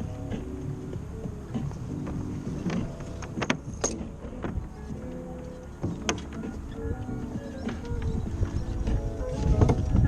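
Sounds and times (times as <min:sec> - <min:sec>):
music with held notes: 0:00.0 - 0:10.0.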